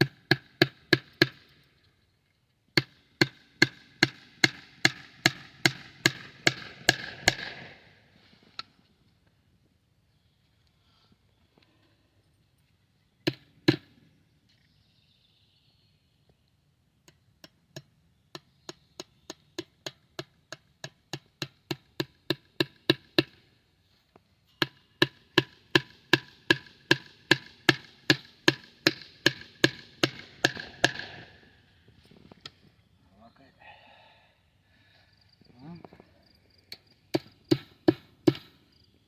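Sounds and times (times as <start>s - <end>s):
sharp knocks: 2.8s - 7.8s, 24.6s - 31.4s, 37.1s - 38.6s.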